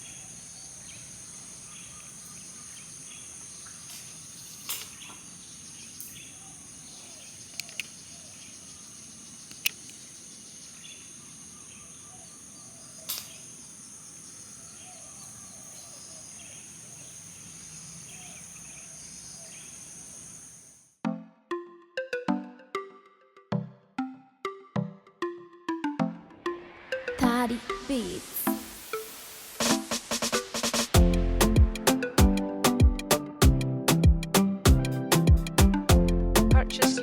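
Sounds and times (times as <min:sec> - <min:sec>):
high-pitched insect chorus: 0:00.0 - 0:20.9
electronic music: 0:24.0 - 0:37.0.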